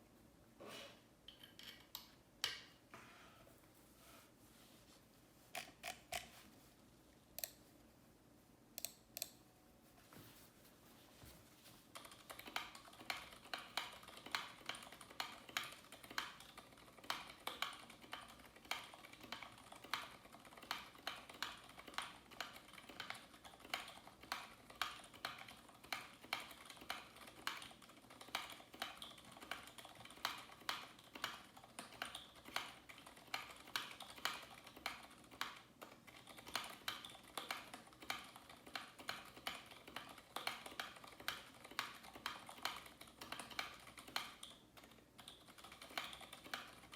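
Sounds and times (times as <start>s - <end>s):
mechanical keyboard typing: 11.9s - 46.9s.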